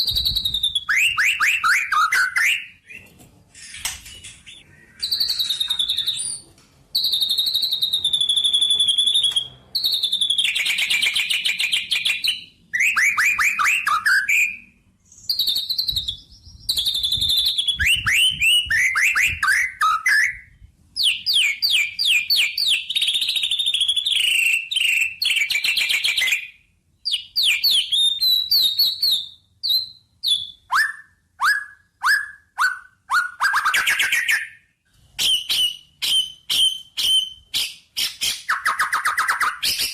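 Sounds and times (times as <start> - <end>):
songbird singing: 4.0 - 34.6.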